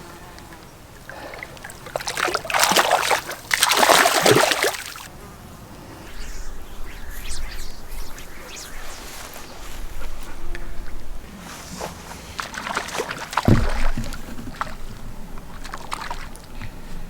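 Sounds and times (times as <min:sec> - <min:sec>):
water splashing and sloshing: 0:01.8 - 0:05.0, 0:11.6 - 0:16.7.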